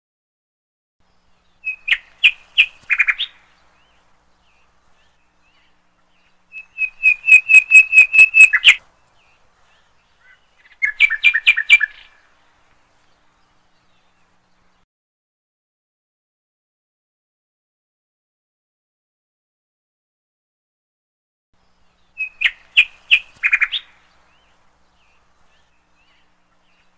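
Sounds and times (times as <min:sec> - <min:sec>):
bird singing sharp notes: 0:01.6 - 0:08.8.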